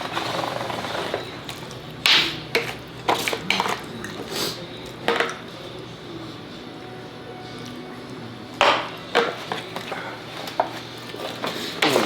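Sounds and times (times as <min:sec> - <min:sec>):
cutlery and plates clinking: 0:02.1 - 0:05.4.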